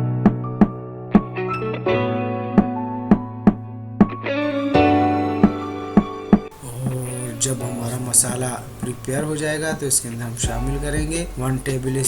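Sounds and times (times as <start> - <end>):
plucked guitar music with beat: 0.0 - 7.0
percussive hits: 0.3 - 1.4, 2.6 - 4.2.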